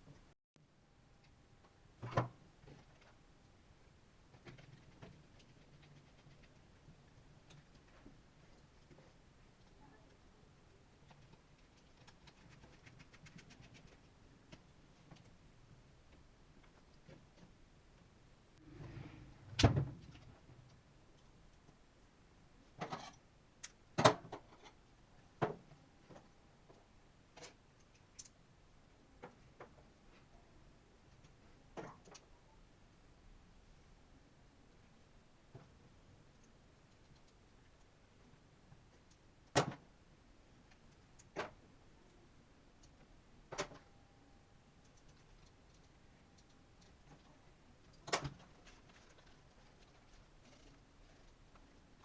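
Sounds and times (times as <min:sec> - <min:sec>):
faint steady tone: 0:40.0 - 0:48.0.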